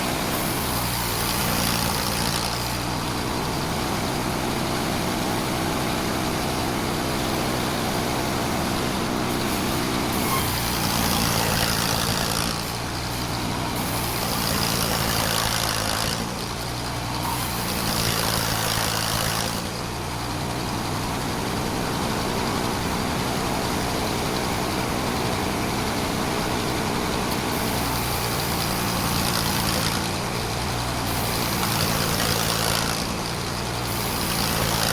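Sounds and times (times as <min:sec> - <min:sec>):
saw cutting hiss: 0:00.0 - 0:03.8, 0:09.3 - 0:19.9, 0:27.3 - 0:34.9
engine drone: 0:00.0 - 0:34.9.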